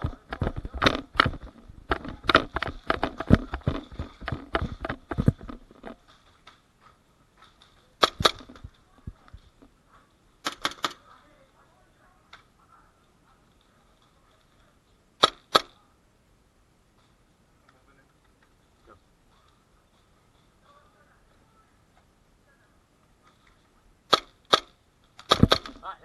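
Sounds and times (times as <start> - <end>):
clatter of knocks and clicks: 0.0 - 6.0
airsoft pistol cracks: 15.2 - 15.7.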